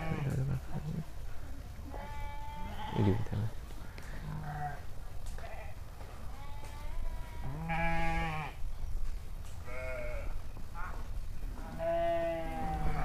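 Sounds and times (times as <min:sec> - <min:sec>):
sheep bleating: 0:00.0 - 0:01.0, 0:01.9 - 0:03.6, 0:05.4 - 0:08.6, 0:09.6 - 0:10.3, 0:11.7 - 0:13.0.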